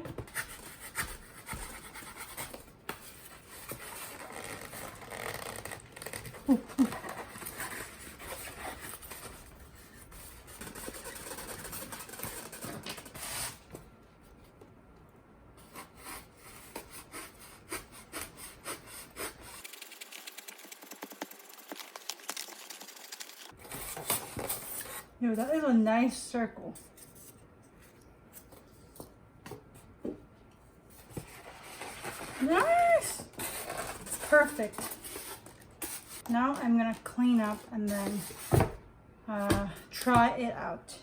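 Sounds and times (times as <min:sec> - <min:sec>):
styrofoam rubbing and scratching: 0:15.7 - 0:23.6, 0:31.3 - 0:36.3.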